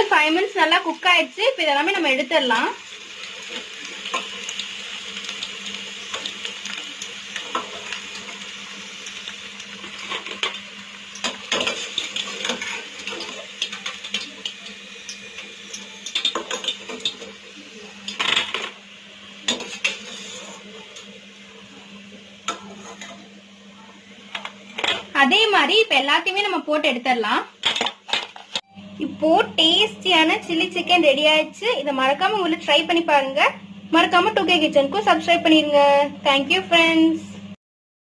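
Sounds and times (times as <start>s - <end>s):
oil sizzling deep-frying: 0.0s - 28.6s
metal utensil scraping a wok: 19.5s - 20.6s.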